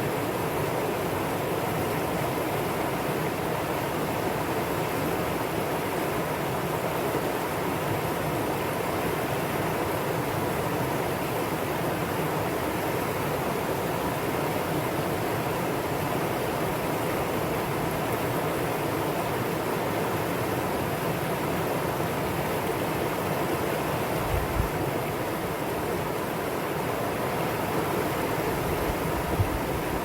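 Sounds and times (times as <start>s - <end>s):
stream rushing over rocks: 0.0s - 30.0s.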